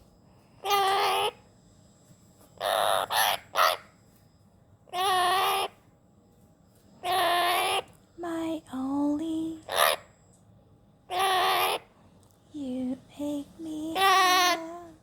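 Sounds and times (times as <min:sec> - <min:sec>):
macaw harsh calls: 0:02.6 - 0:03.9, 0:05.0 - 0:05.8, 0:07.1 - 0:07.9, 0:09.7 - 0:10.1, 0:11.1 - 0:11.9.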